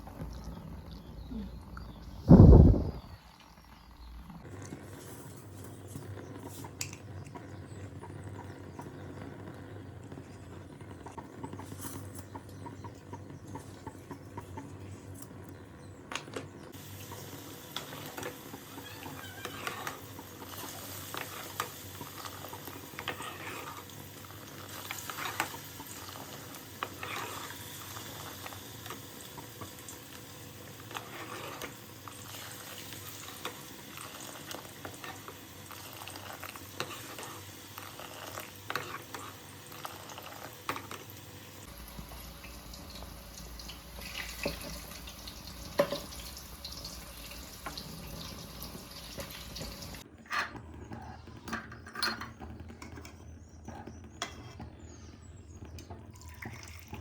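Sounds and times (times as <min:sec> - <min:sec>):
food frying in oil: 0:16.7 - 0:50.1
spatula scraping a pan: 0:17.8 - 0:29.0, 0:30.7 - 0:41.0.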